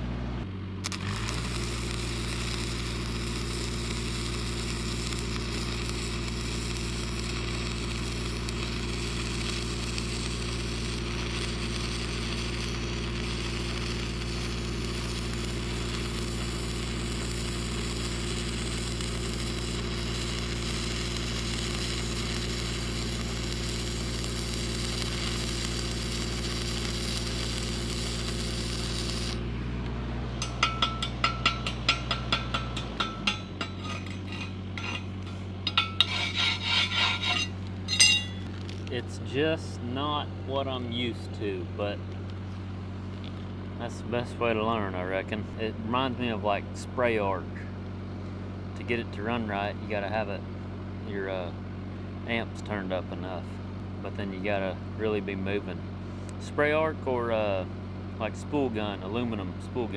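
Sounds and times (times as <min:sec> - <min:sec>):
welding machine engine drone: 0:00.0 - 0:39.6, 0:42.1 - 0:43.8
welding arc crackling hiss: 0:00.8 - 0:29.6, 0:30.4 - 0:38.8
sharp metallic taps: 0:30.4 - 0:38.5.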